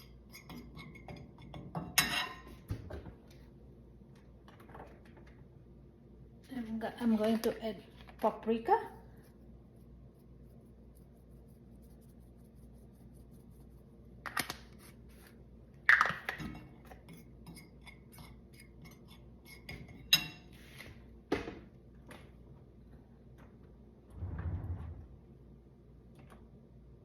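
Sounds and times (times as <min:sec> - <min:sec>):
utensils clinking against a bowl: 0:00.0 - 0:02.6, 0:16.2 - 0:20.6.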